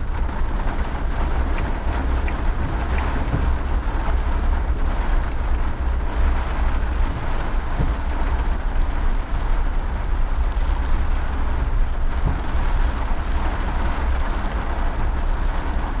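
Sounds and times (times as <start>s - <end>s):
heavy rain falling: 0.0s - 16.0s
wind buffeting microphone: 0.0s - 16.0s.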